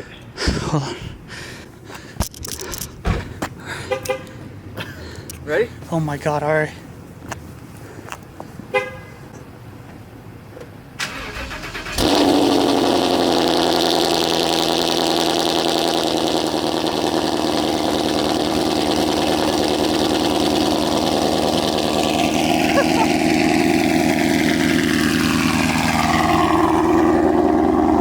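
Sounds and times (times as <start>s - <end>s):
engine starter cranking: 2.2s - 3.4s, 11.0s - 13.1s
car engine idling loudly: 11.9s - 28.0s.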